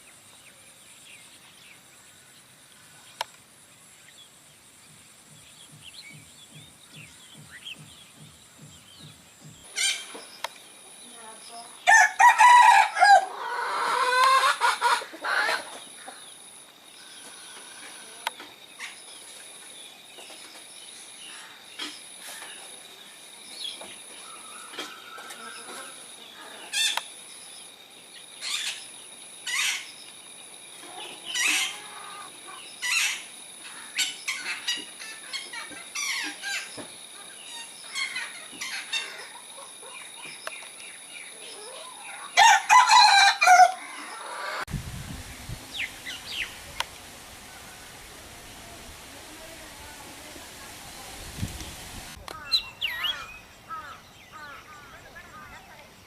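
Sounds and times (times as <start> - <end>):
birds calling loudly: 0.0 - 10.8, 30.8 - 44.7, 45.7 - 48.7, 50.5 - 56.0.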